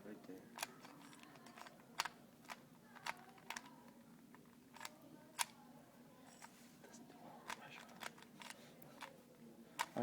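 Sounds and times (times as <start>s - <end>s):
puzzle cube plastic clicks: 0.6s - 3.8s, 7.5s - 9.1s.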